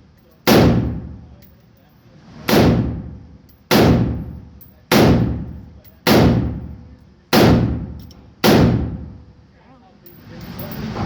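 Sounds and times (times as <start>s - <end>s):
pistol gunshots with echo: 0.5s - 1.3s, 2.5s - 9.2s.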